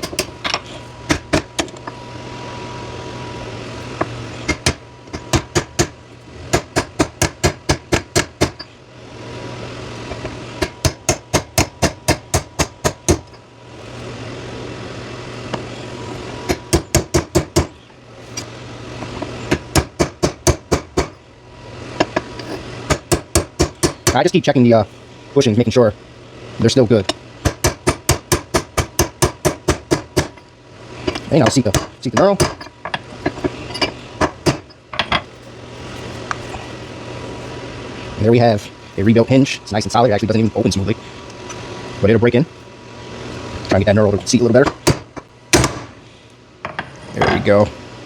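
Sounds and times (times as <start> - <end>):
steady hum: 0.0 - 48.0.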